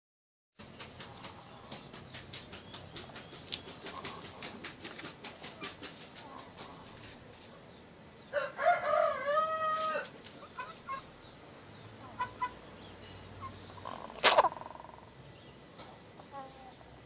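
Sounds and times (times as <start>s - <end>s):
rooster crowing: 8.3s - 10.2s.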